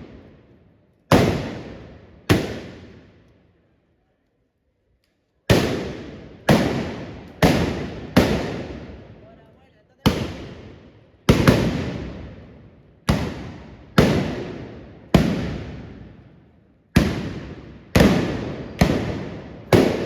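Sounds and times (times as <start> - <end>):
loud gunshots with echo: 1.1 - 3.1, 5.5 - 9.3, 10.0 - 20.0.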